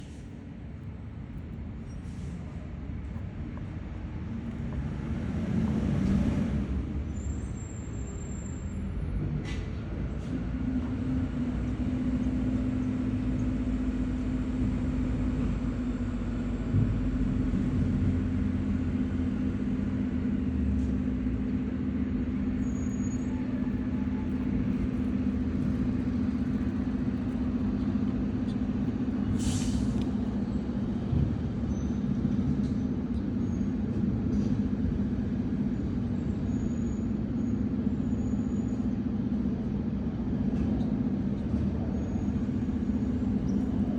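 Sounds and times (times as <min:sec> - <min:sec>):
air brake hiss: 0:00.0 - 0:00.4, 0:02.0 - 0:02.5, 0:29.3 - 0:30.1
vehicle engine humming: 0:00.0 - 0:43.9.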